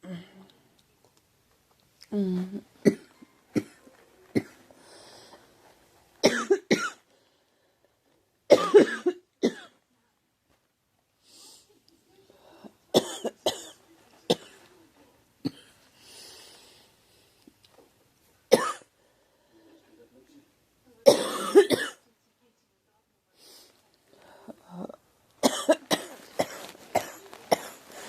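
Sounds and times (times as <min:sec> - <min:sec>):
faint breaths: 0:03.2 - 0:06.2, 0:07.0 - 0:08.3, 0:11.2 - 0:12.9, 0:15.8 - 0:17.6, 0:18.9 - 0:20.3, 0:23.3 - 0:25.0, 0:26.1 - 0:28.0
girl coughing: 0:06.2 - 0:07.0, 0:08.5 - 0:09.7, 0:13.0 - 0:14.5, 0:18.5 - 0:18.8, 0:21.0 - 0:22.0, 0:25.4 - 0:27.8.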